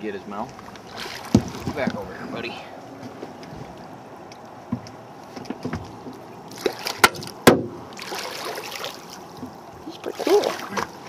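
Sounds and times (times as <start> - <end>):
water splashing against boat: 0.3 - 11.0
knocks on boat hull: 1.3 - 2.0, 7.0 - 7.8.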